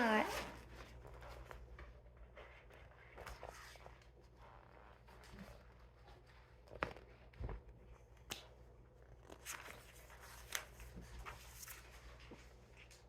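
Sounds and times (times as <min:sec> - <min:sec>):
book page turning: 0:05.0 - 0:13.0.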